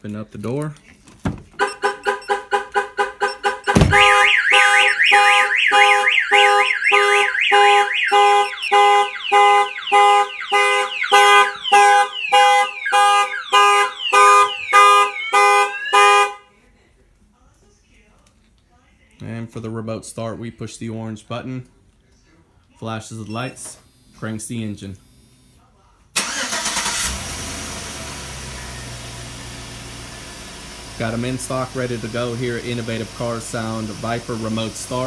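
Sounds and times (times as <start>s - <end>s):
car alarm siren: 1.6s - 16.5s, 26.2s - 30.6s
thump: 3.7s - 4.2s.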